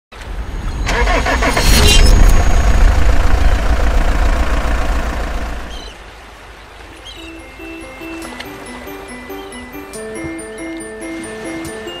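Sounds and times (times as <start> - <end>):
engine low rumble: 0.2 - 6.0
engine starting with clatter: 0.9 - 2.4.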